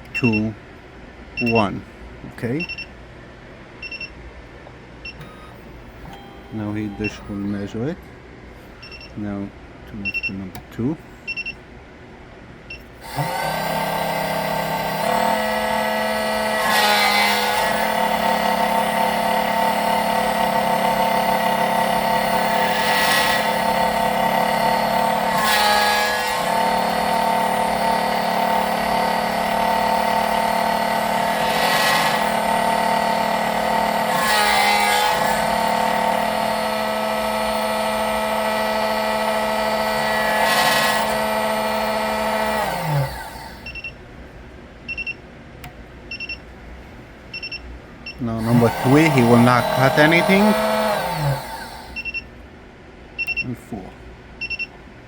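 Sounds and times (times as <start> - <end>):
key-cutting machine motor: 5.1 - 7.9, 12.9 - 43.9, 48.1 - 52.2.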